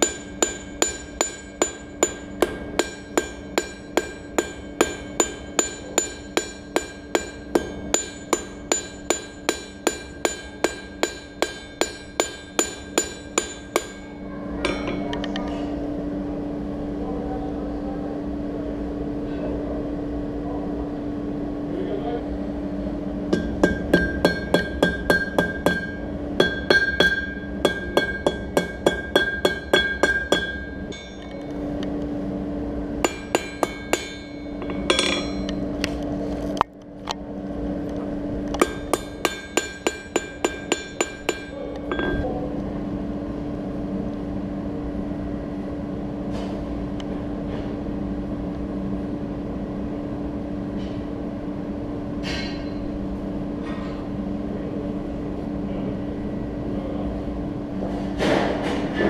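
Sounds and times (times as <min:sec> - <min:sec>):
hammer striking iron on anvil: 0:00.0 - 0:15.2, 0:23.3 - 0:31.5, 0:33.0 - 0:35.6, 0:38.6 - 0:42.2, 0:52.2 - 0:52.8
low hum: 0:00.0 - 0:58.1.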